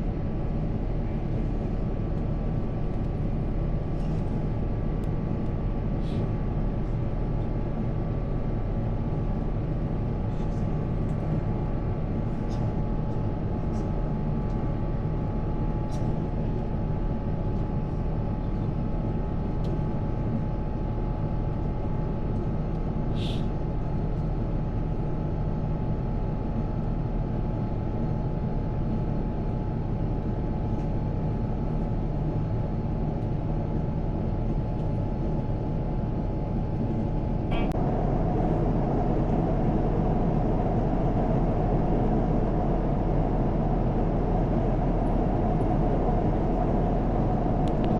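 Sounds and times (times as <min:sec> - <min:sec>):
jet engines whining and rumbling: 0:00.0 - 0:47.9
click: 0:47.6 - 0:47.9.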